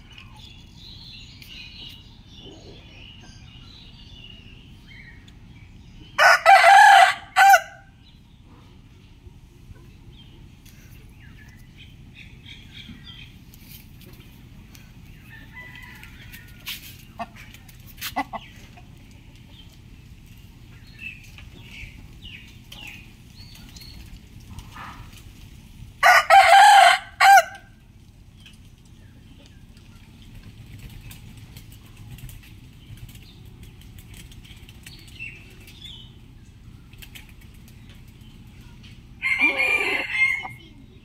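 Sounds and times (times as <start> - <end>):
chicken clucks and chirps: 0.0 - 25.3, 28.3 - 41.0
low background hum: 0.0 - 41.0
rooster crowing: 6.2 - 7.9, 15.2 - 16.8, 26.0 - 27.7, 39.2 - 40.7.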